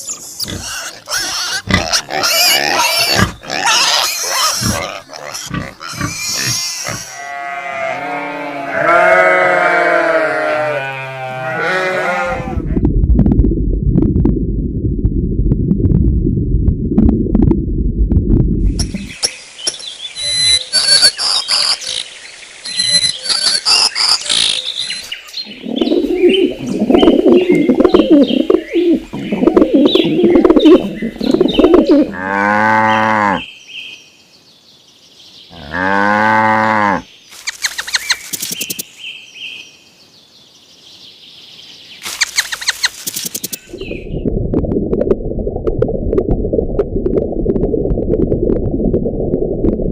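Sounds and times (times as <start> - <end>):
rough animal noises: 0.0 - 12.7
cattle mooing: 6.9 - 12.6
birds chirping: 18.8 - 44.2.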